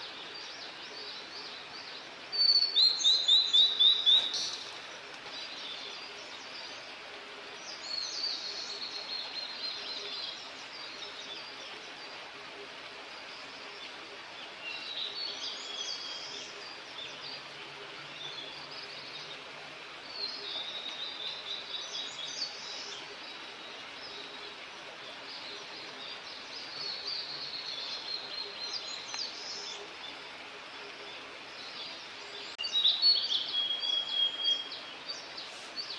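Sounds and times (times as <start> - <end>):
bird singing: 0.0 - 6.8, 13.5 - 19.4, 31.5 - 35.9
outdoor background hiss: 0.0 - 35.9.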